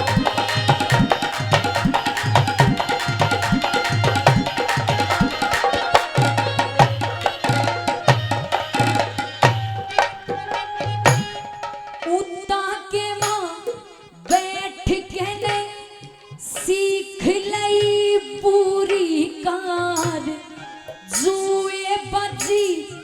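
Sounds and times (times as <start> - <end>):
hand drum strokes: 0.0 - 11.6
folk melody with bending notes: 0.0 - 14.0.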